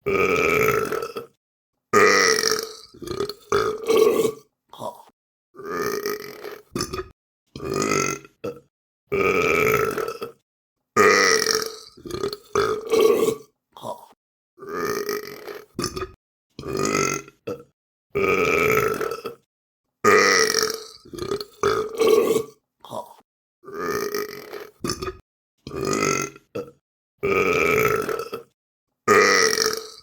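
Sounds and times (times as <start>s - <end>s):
person burping: 0.0s - 1.4s, 2.0s - 10.4s, 11.0s - 19.5s, 20.1s - 30.0s.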